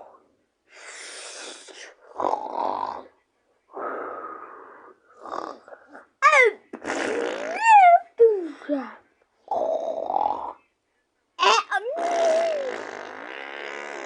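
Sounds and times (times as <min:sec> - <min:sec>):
person snoring: 0:00.8 - 0:06.0, 0:09.5 - 0:10.6, 0:11.9 - 0:14.0.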